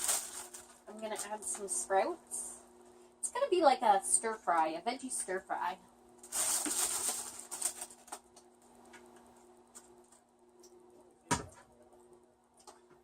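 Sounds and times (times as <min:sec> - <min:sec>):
plastic bag rustling: 0:00.0 - 0:01.8, 0:06.2 - 0:08.4.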